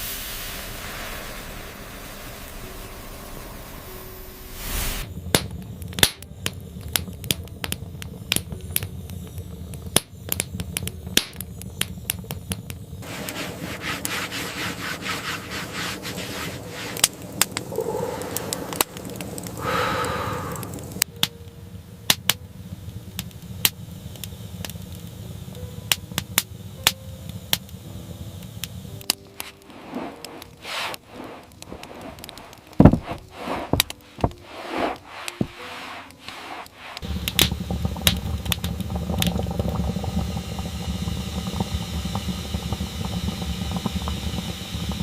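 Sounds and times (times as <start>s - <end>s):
steady low rumble: 0.0s - 5.8s, 17.0s - 21.0s, 29.5s - 44.0s
rustling and scraping: 13.0s - 17.7s, 29.4s - 37.1s.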